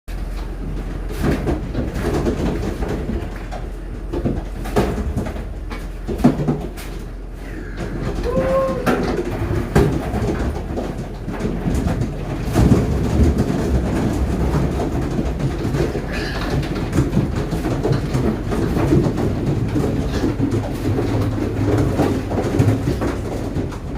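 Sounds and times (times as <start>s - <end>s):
knocks and metal clatter: 0.1s - 23.9s
pigs grunting: 7.2s - 9.5s, 15.6s - 18.0s, 19.6s - 23.3s.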